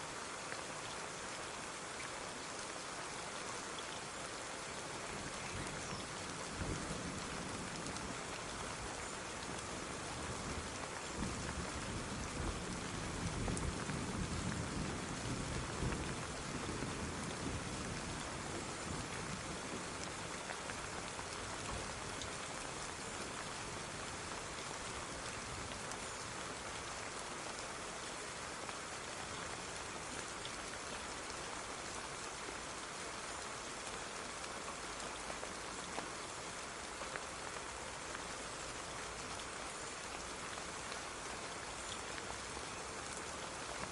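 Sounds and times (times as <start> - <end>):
soft rain falling: 0.0 - 43.9
low rumble of thunder: 5.2 - 8.8, 9.4 - 20.3.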